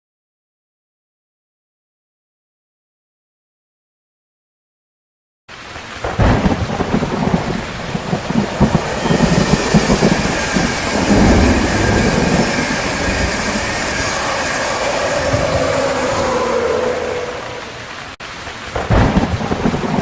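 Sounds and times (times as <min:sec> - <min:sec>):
heavy rain falling: 0:05.5 - 0:20.0
thunder rumbling: 0:05.9 - 0:20.0.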